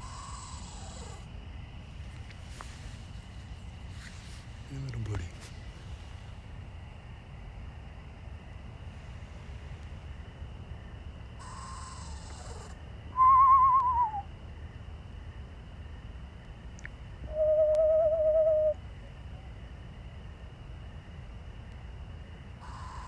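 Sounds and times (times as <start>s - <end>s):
owl hissing screech: 0.0s - 1.3s, 11.4s - 12.8s, 22.6s - 23.0s
owl quavering trill: 0.0s - 1.3s, 11.4s - 14.3s, 17.3s - 18.8s, 22.6s - 23.0s
owl quavering whistle: 0.0s - 1.3s, 11.4s - 14.3s, 17.3s - 18.8s, 22.6s - 23.0s.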